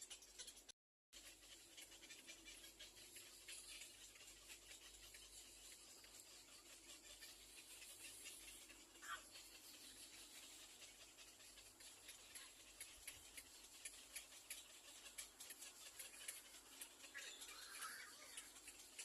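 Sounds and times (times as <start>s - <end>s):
soft rustling ticks: 0.0s - 19.0s
faint squeak: 7.1s - 10.6s, 16.0s - 18.6s.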